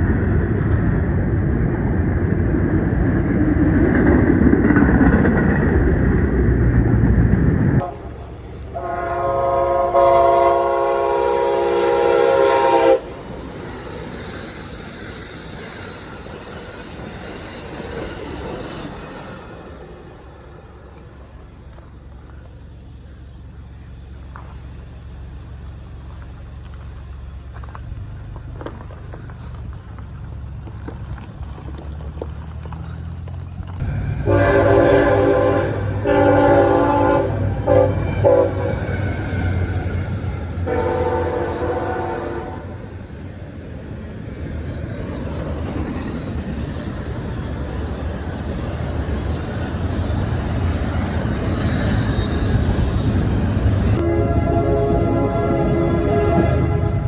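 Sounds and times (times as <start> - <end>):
train rumble: 0.0 - 57.0
locomotive horn: 7.8 - 13.2, 33.8 - 42.9, 54.0 - 57.0.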